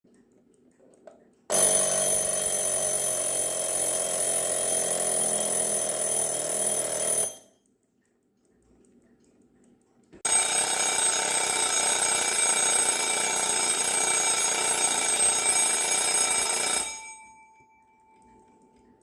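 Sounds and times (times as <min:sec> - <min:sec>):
mechanical alarm clock bell ringing: 0:01.5 - 0:07.7, 0:10.2 - 0:18.7.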